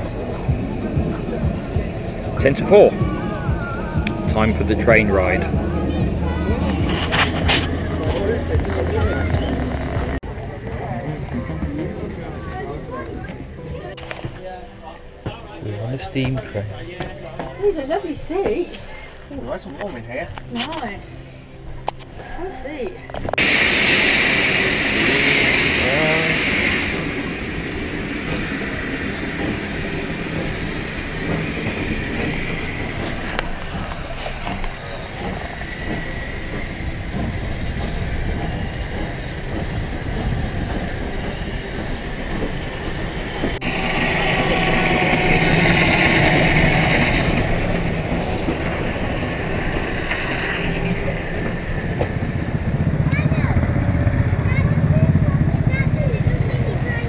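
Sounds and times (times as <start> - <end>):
steam hissing: 23.4 - 57.0
train wheels clattering on track: 23.4 - 57.0.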